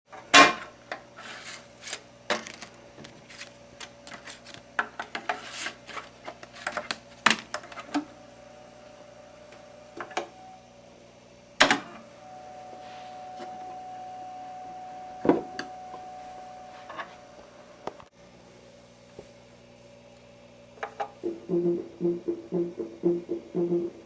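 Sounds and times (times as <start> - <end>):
electrical hum: 6.0 - 24.0
steady single tone: 12.2 - 17.4.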